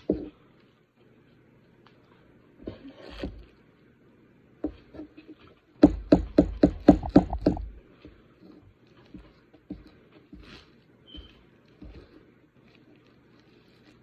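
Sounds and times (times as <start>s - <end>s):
dull thumps: 0.0s - 0.4s, 4.6s - 8.2s, 9.1s - 12.2s
sharp knocks: 5.8s - 7.8s.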